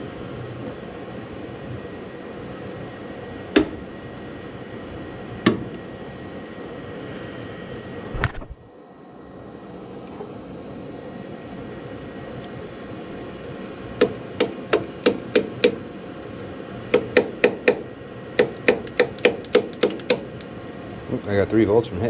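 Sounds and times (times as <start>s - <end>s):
sharp knocks on switch: 18.4s - 20.5s.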